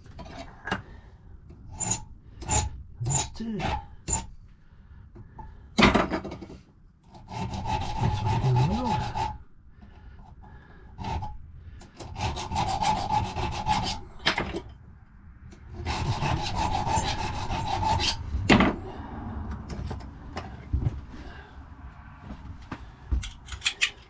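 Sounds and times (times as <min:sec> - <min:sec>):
hand file filing metal: 0:01.7 - 0:04.3, 0:07.1 - 0:09.4, 0:11.0 - 0:14.6, 0:15.7 - 0:18.6.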